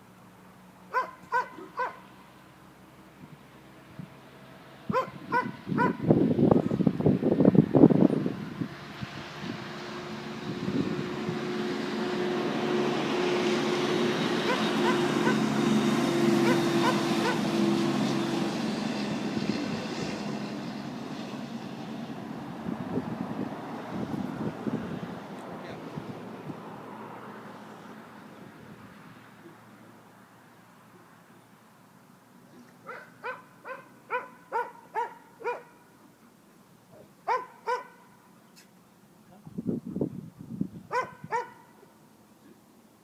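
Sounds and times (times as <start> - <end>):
vehicle engine humming: 0.0 - 43.0
dog barking: 0.9 - 2.0, 4.9 - 6.0, 14.5 - 15.4, 16.4 - 17.4, 32.8 - 35.8, 37.3 - 38.2, 40.9 - 41.8.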